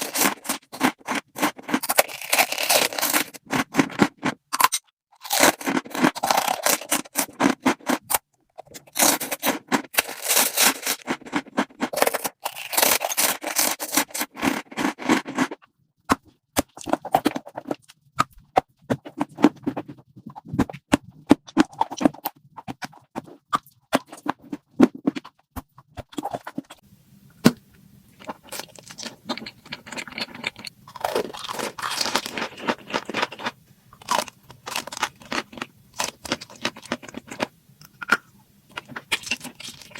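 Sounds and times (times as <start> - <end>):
crunchy bites and chewing: 0.0 - 15.6, 16.2 - 18.0, 18.9 - 25.4, 27.4 - 39.9.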